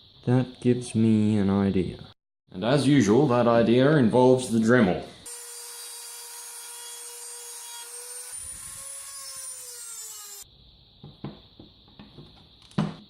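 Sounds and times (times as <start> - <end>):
rotary tool cutting metal: 5.3 - 10.4.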